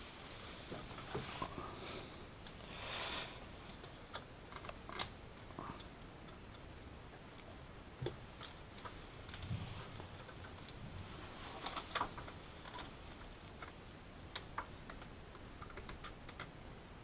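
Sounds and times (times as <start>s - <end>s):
scraping rustle: 0.0s - 5.0s, 8.8s - 14.0s.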